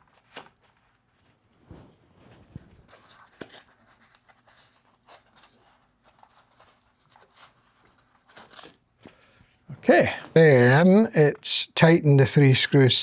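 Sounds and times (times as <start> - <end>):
rustling of foam packing: 0.0 - 9.6.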